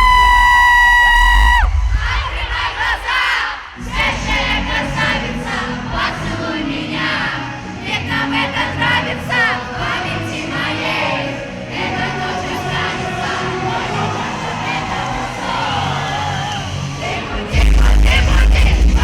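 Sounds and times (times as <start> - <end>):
crowd singing along: 1.8 - 19.0
live pop music: 11.9 - 19.0.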